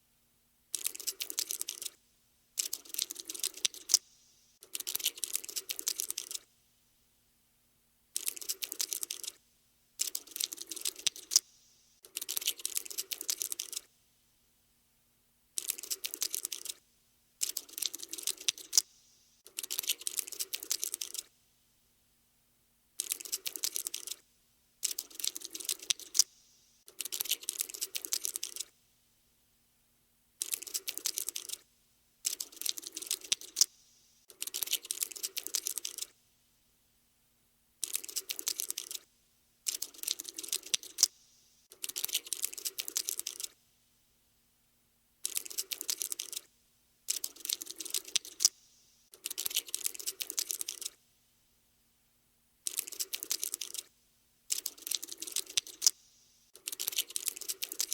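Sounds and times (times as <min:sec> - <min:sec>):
rapid dry clicking and tapping: 0:24.8 - 0:28.7, 0:39.7 - 0:43.6, 0:54.5 - 0:57.9.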